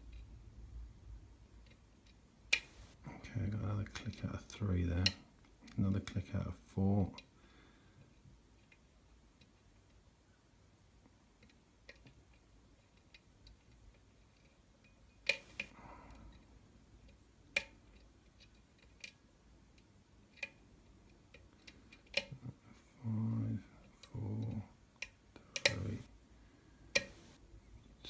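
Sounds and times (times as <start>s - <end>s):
lock pick clicks and metallic ticks: 11.4s - 15.7s, 16.3s - 22.4s, 23.9s - 26.1s.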